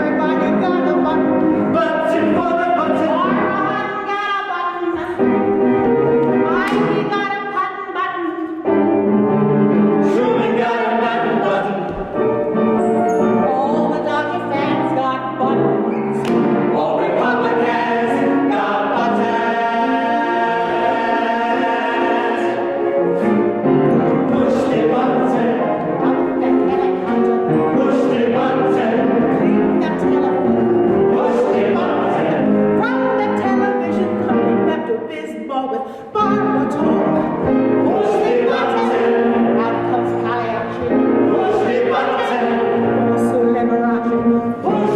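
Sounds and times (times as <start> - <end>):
instrumental accompaniment: 0.0 - 35.1, 36.2 - 44.9
ensemble singing show tune: 9.7 - 44.9.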